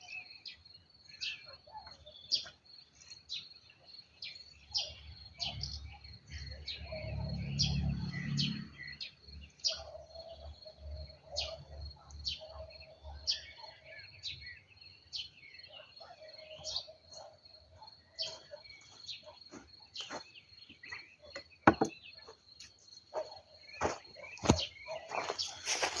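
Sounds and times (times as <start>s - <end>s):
small birds chirping: 0.0s - 26.0s
sharp knocks: 21.7s - 22.0s.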